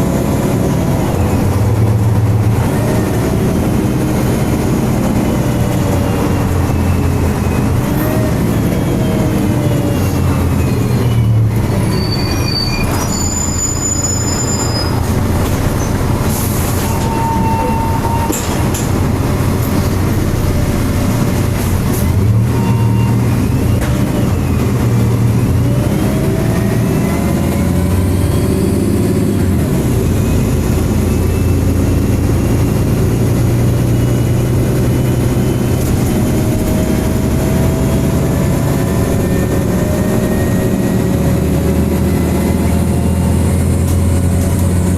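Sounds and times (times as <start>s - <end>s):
bus engine rumbling: 0.0s - 44.9s.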